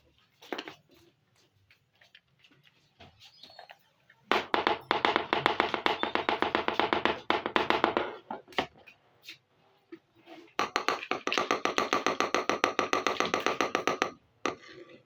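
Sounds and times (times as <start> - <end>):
plastic toy pieces tapping: 10.6 - 14.6.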